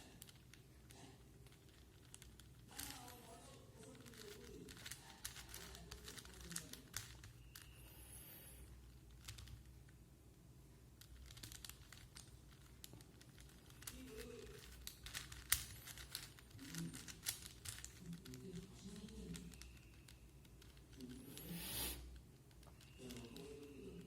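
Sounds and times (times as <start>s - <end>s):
puzzle cube clicking: 11.0s - 24.0s.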